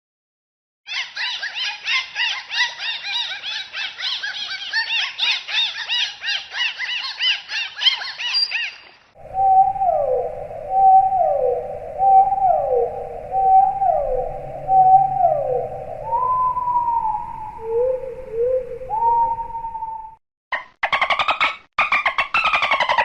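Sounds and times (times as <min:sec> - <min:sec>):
dolphin whistles and chirps: 0:00.9 - 0:08.8
low hiss: 0:08.8 - 0:20.2.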